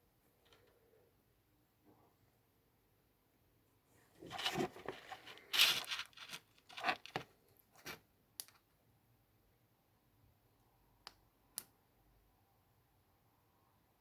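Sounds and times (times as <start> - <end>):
earphones rustling and scraping: 4.0 - 8.0.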